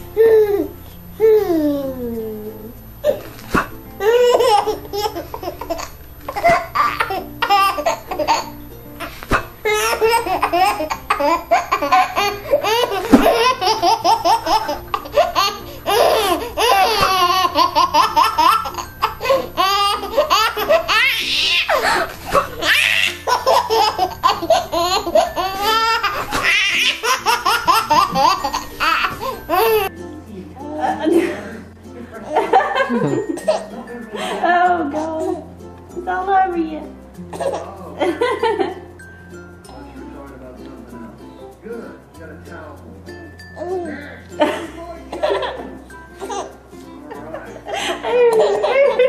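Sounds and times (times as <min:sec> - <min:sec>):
young child laughing: 0:47.8 - 0:49.0.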